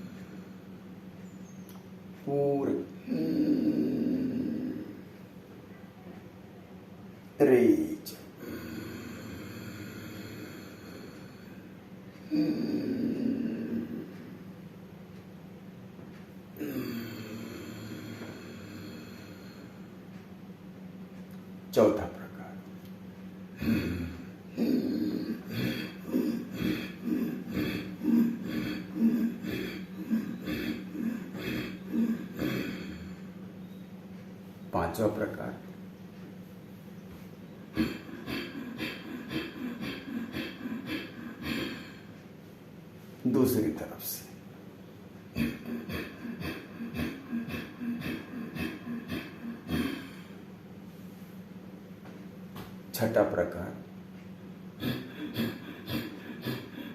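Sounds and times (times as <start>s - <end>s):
person breathing forcefully: 23.6s - 33.4s, 37.7s - 42.2s, 45.4s - 50.5s, 54.8s - 56.9s
man breathing forcefully through nose: 45.5s - 50.4s.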